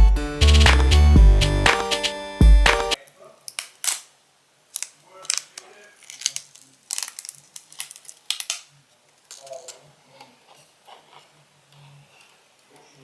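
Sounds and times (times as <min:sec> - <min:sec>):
small parts and tools clicking: 0:03.0 - 0:12.9.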